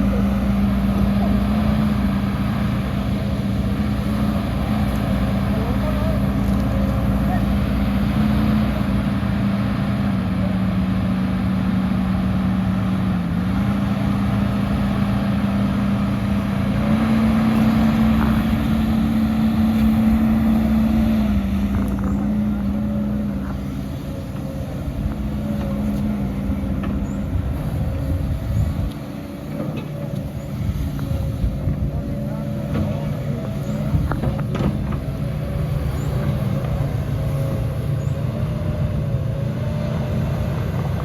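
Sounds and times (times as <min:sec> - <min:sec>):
heavy machinery diesel engine: 0:00.0 - 0:41.0.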